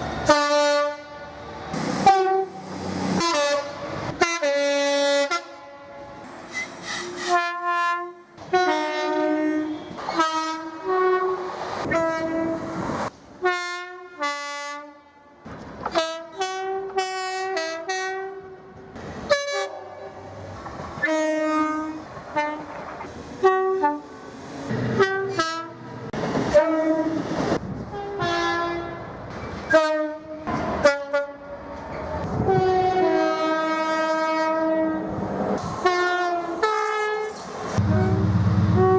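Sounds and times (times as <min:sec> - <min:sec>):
train air horn blasts: 0:00.2 - 0:01.4, 0:02.0 - 0:12.8, 0:13.4 - 0:15.2, 0:21.0 - 0:22.7, 0:23.4 - 0:24.2, 0:24.9 - 0:25.9, 0:27.9 - 0:29.0, 0:29.7 - 0:31.6, 0:32.3 - 0:35.1, 0:35.8 - 0:38.9.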